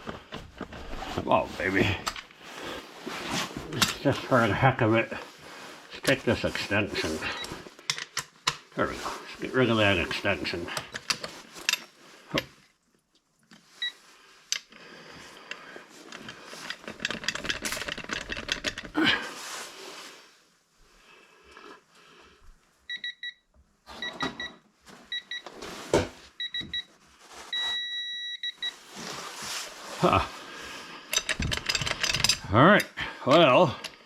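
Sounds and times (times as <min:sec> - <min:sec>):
ratchet clicking and rattling: 0:31.1 - 0:32.4.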